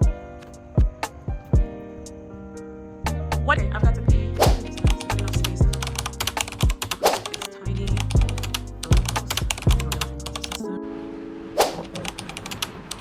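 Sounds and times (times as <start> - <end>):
background music with bass: 0.0 - 6.8, 7.6 - 10.6
rapid crisp clicking: 4.4 - 10.6, 11.6 - 13.0.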